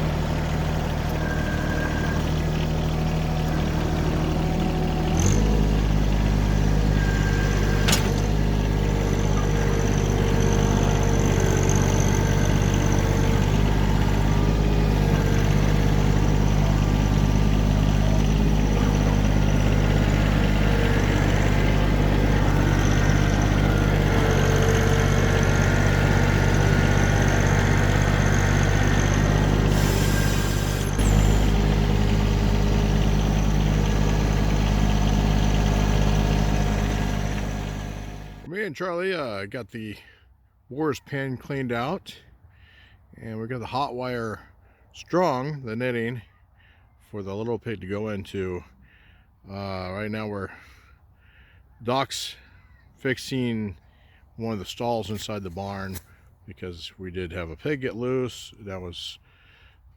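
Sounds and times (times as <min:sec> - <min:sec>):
tractor engine running: 0:00.0 - 0:38.5.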